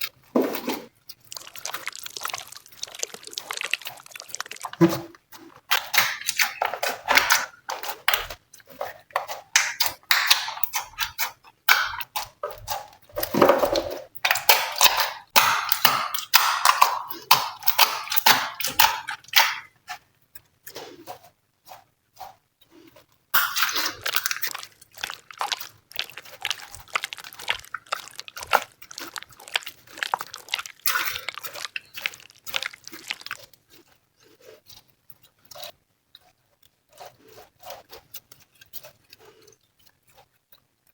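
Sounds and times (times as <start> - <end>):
slime squished by hand: 1.2 - 6.6, 23.7 - 33.6.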